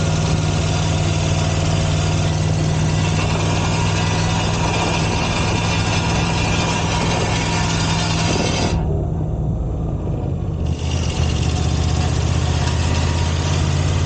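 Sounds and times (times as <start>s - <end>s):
loose exhaust cover vibrating: 0.0s - 9.2s.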